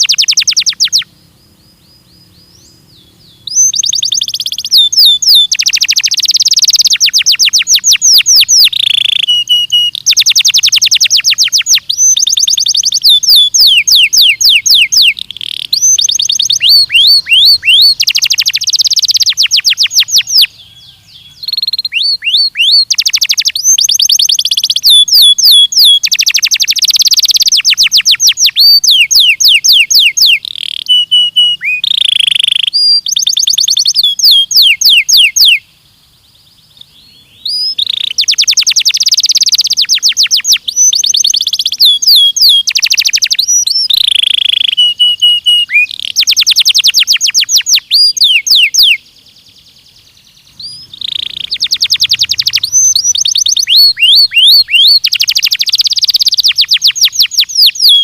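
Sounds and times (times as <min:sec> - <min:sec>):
canary singing trills: 0:00.0 - 0:58.0.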